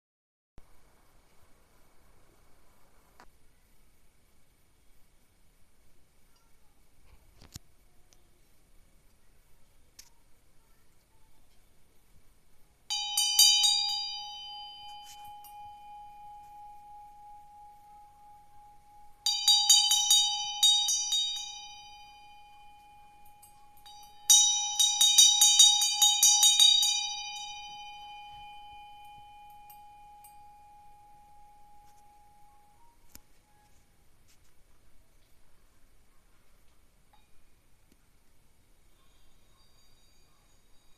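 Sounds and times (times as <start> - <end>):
hand bell ringing: 12.9 - 32.9.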